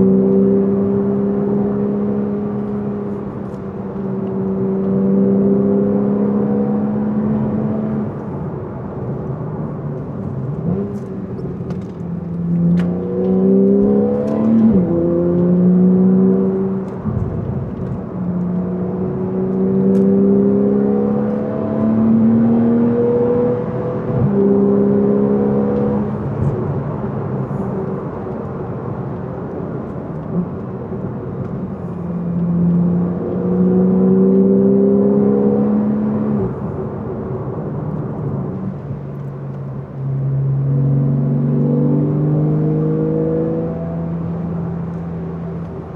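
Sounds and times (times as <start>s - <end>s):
car engine accelerating: 0.0s - 45.9s.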